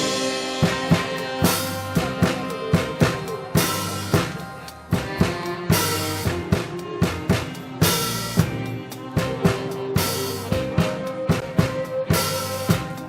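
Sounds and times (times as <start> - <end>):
big bright drum hit: 0.0 - 4.4
live dance band playing: 0.0 - 13.0.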